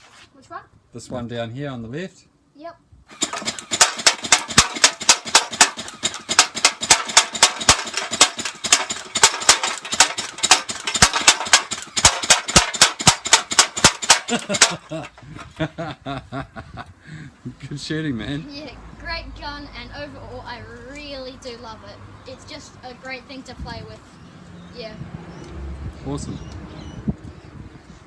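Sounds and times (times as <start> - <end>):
gel blaster firing full auto: 3.1 - 14.8.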